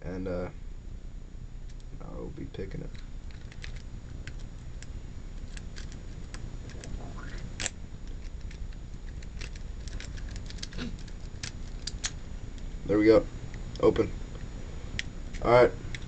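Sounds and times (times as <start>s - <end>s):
lock pick metallic clicks and scrapes: 7.6s - 12.2s.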